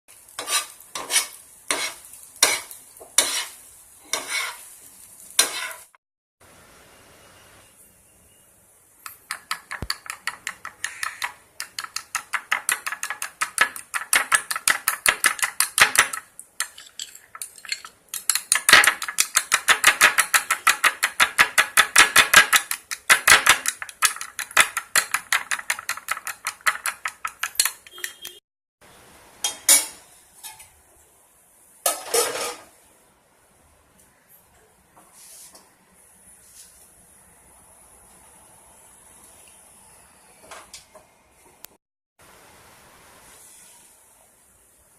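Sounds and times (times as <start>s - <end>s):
spoon clattering against bowl: 9.0s - 28.4s.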